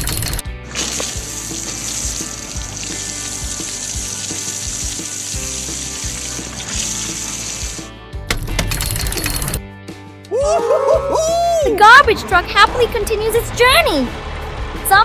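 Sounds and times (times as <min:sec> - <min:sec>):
background music: 0:00.0 - 0:15.0
water spraying from hose: 0:00.8 - 0:07.8.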